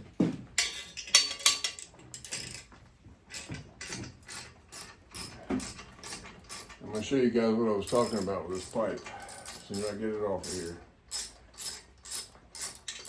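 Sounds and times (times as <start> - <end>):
ratchet wrench clicking: 7.9 - 13.0.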